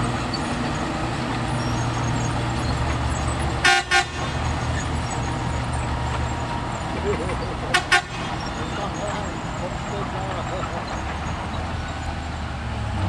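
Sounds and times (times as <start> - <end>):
heavy diesel engine droning: 0.0 - 13.0
vehicle horn beeps: 3.6 - 4.9, 7.2 - 11.0.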